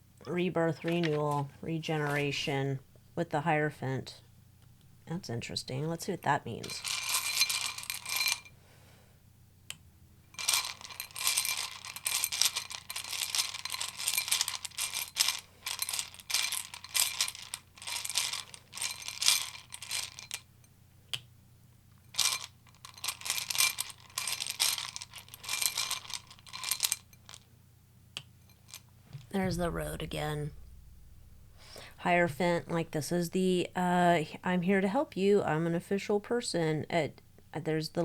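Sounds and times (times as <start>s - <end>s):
cards being shuffled: 0.8s - 2.4s.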